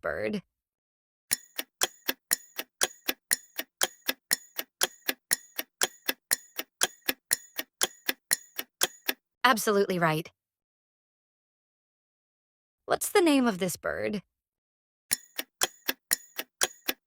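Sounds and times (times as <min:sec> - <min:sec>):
clock ticking: 0:01.3 - 0:09.2, 0:15.1 - 0:17.0.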